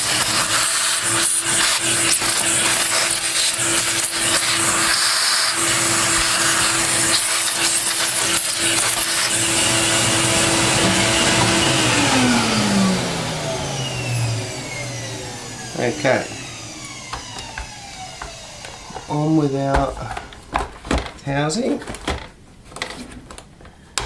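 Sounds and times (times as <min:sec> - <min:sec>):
vacuum nozzle scraping and knocking: 0:00.0 - 0:11.8, 0:17.0 - 0:23.4
vacuum cleaner running: 0:00.0 - 0:21.1.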